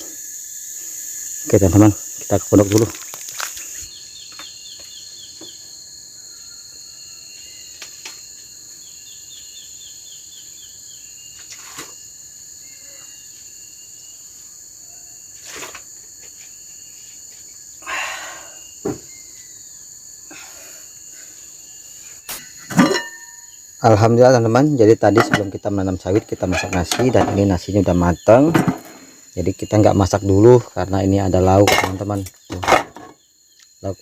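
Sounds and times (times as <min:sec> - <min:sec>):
high-pitched insect chorus: 0:00.0 - 0:34.0
insect chirping trill: 0:00.0 - 0:34.0
knocks and rustles: 0:28.5 - 0:29.0, 0:31.7 - 0:33.2.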